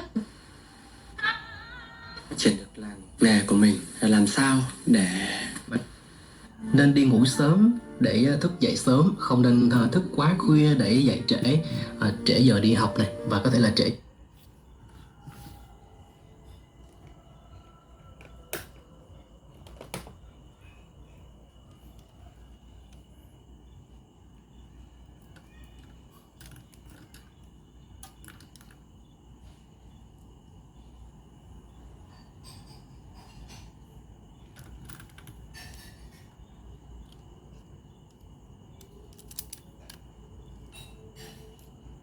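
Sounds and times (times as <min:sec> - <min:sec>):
faint high-pitched tone: 0:06.4 - 0:14.0.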